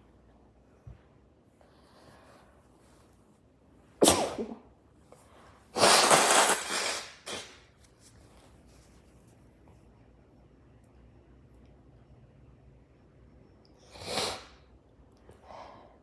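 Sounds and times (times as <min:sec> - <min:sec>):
person sneezing: 0:04.0 - 0:04.7.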